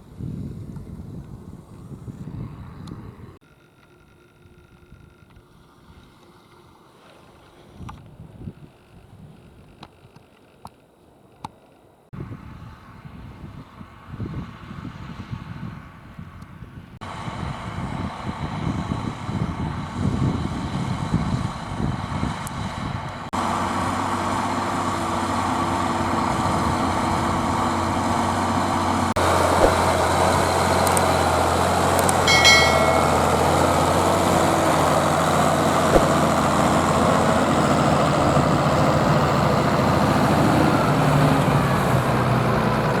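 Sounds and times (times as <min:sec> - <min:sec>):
tractor diesel engine running: 0:17.1 - 0:43.0.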